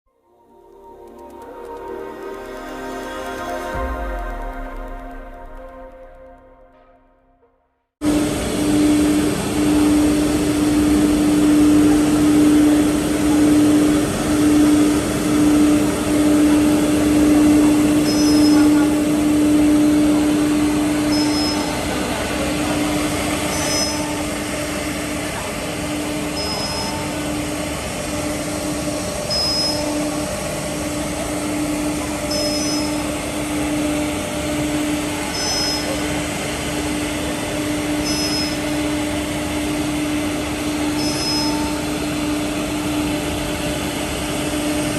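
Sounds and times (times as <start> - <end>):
router spindle high hum: 0.2 - 7.0, 8.0 - 44.9
machine noise: 0.2 - 7.2, 8.0 - 44.9
short high-pitched chirps: 18.0 - 18.7, 32.3 - 33.0, 35.3 - 36.0, 38.0 - 38.7, 41.0 - 41.7.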